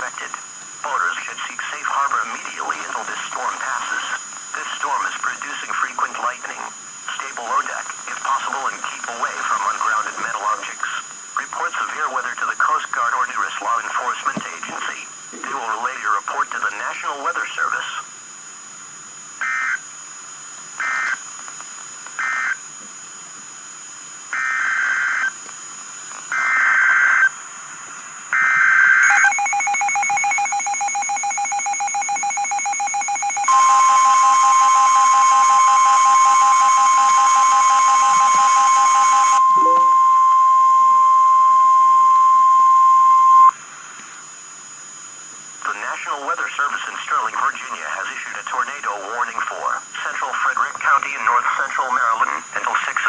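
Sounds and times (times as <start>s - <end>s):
digital data bursts: 28.4s - 43.5s
single-pitch warning alarm tone: 28.4s - 43.6s
buzzy alert tone: 32.7s - 40.8s.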